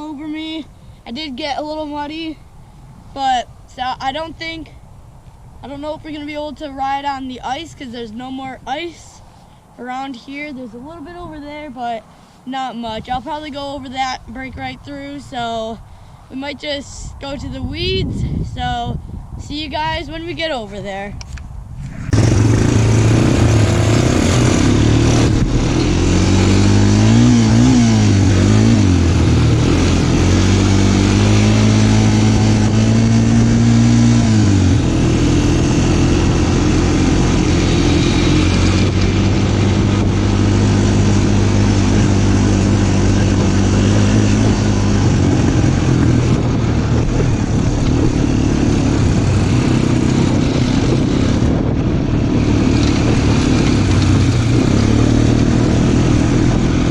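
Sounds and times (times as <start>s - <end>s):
off-road vehicle engine running: 0.0s - 2.5s, 21.8s - 56.9s.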